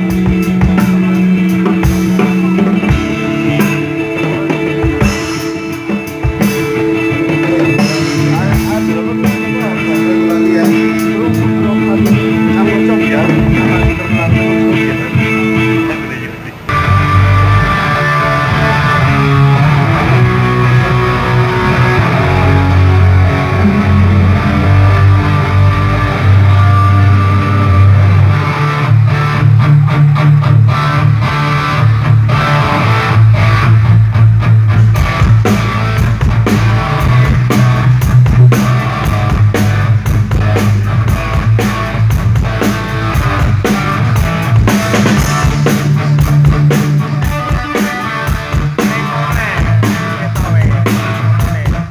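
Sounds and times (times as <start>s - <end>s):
drum kit playing: 0.0s - 51.9s
guitars and bass: 0.0s - 51.9s.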